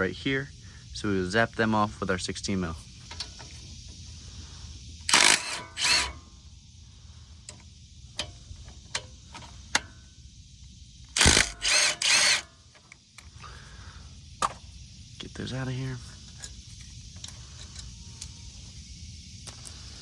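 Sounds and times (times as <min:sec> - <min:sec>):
impact gun bursts: 0:05.1 - 0:06.2, 0:11.2 - 0:12.5.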